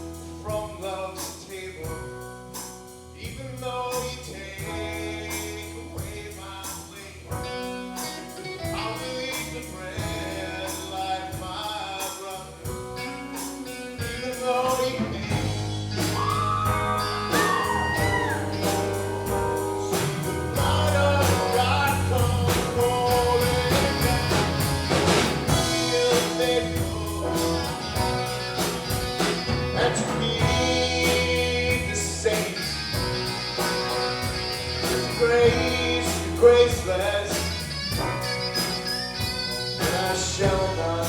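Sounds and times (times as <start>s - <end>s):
blues-rock band music: 0.0s - 3.8s, 4.4s - 41.0s
low bass notes: 0.0s - 41.0s
steady drum beat: 14.0s - 40.8s.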